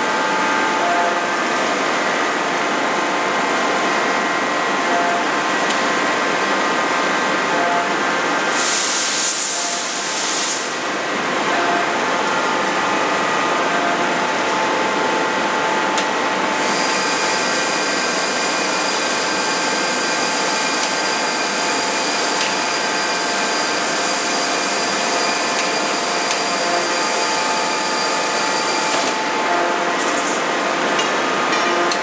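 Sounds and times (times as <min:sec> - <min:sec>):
higher machine whine: 0:00.0 - 0:08.5, 0:10.7 - 0:32.0
machinery drone with whining tones: 0:00.0 - 0:32.0.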